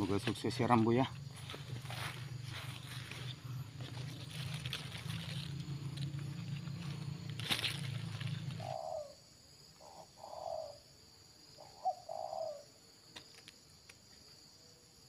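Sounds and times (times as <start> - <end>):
insects chirring: 0.0 - 15.0
low rumble: 1.1 - 8.8
dove cooing: 1.4 - 10.9, 11.6 - 12.8.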